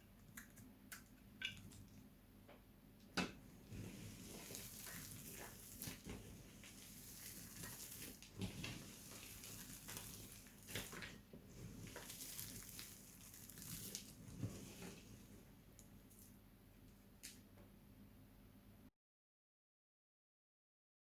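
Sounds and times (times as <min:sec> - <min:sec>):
soap scraping and crunching: 0:03.7 - 0:15.1.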